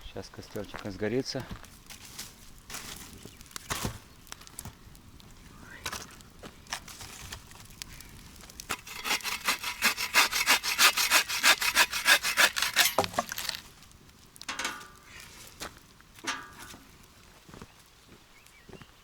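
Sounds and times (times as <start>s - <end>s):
hand saw cutting wood: 8.7s - 13.6s.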